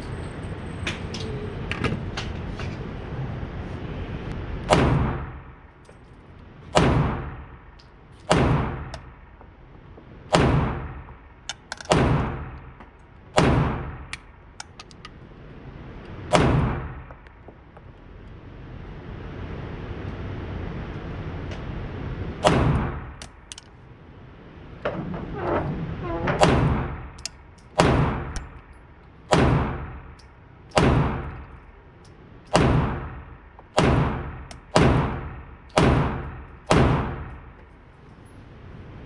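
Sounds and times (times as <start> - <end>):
steady background noise: 0.0 - 39.0
rifle shots with echo: 6.8 - 7.4, 8.3 - 8.9, 10.3 - 11.0, 11.9 - 12.6, 13.4 - 14.1, 16.3 - 17.0, 27.8 - 28.4, 30.7 - 31.3, 32.5 - 37.3.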